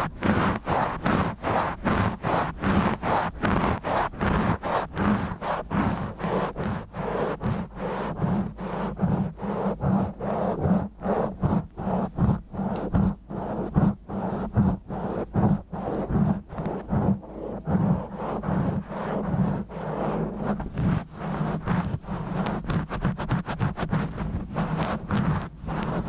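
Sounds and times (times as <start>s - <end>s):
fingers scraping on microphone: 0.0s - 26.0s.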